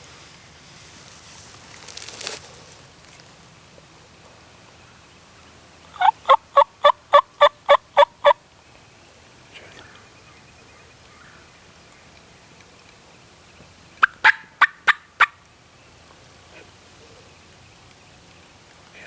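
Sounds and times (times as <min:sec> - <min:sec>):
turkey gobbling: 0:05.9 - 0:08.4, 0:14.0 - 0:15.4.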